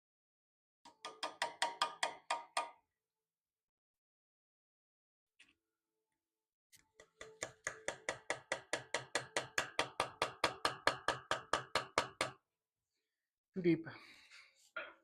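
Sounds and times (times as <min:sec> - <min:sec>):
hammer tapping on iron: 0:00.9 - 0:02.8, 0:07.0 - 0:12.4.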